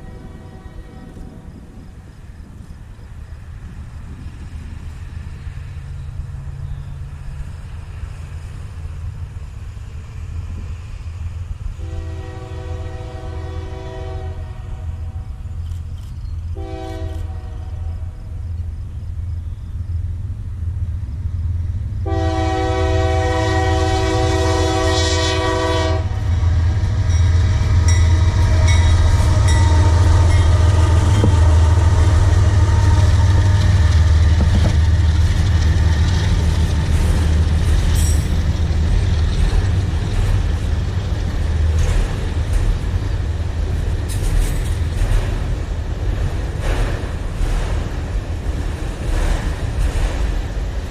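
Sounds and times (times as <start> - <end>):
train horn blast: 0.0 - 1.4, 11.8 - 15.3, 16.6 - 18.2, 22.0 - 34.5
train rumbling past: 0.0 - 50.9.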